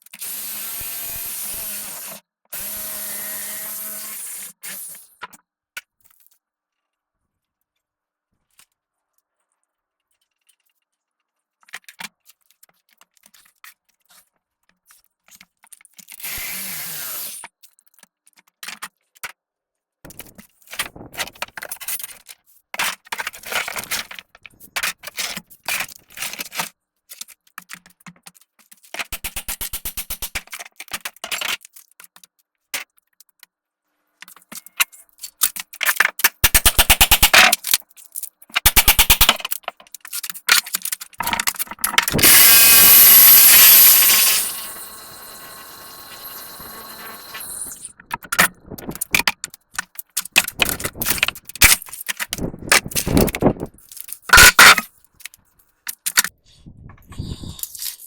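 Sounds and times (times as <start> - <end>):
tools tearing out plywood: 38.6 - 39.6, 40.3 - 45.3, 46.0 - 54.9.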